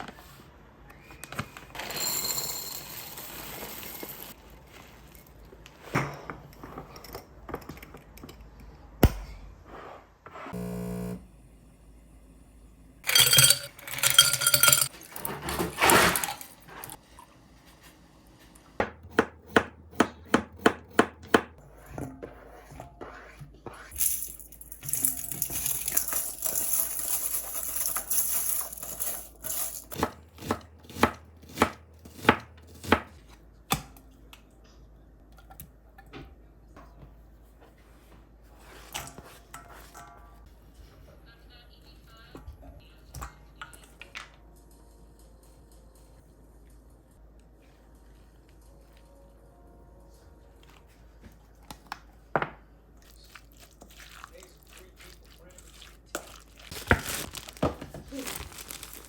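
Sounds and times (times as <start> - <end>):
kitchen clatter: 13.0 - 17.0, 24.1 - 30.2.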